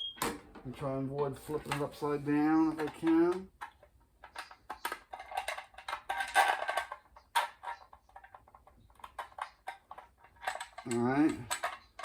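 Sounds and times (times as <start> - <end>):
metal parts knocking and clicking: 2.7 - 12.0.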